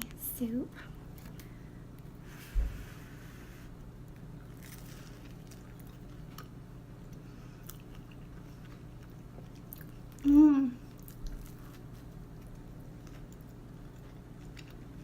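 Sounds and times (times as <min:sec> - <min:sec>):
steady low hum: 0:00.0 - 0:15.0
person chewing and crunching: 0:04.2 - 0:15.0.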